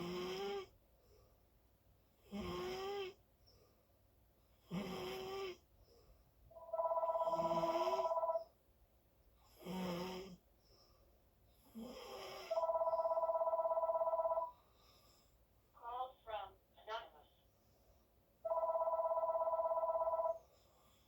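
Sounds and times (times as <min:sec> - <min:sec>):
loud snoring: 0:00.0 - 0:00.7, 0:02.3 - 0:03.2, 0:04.6 - 0:05.6, 0:07.2 - 0:08.2, 0:09.6 - 0:10.4, 0:11.7 - 0:12.7.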